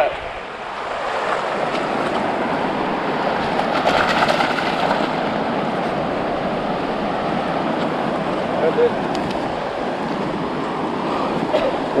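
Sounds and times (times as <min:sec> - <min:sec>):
surf breaking on beach: 0:01.4 - 0:06.1.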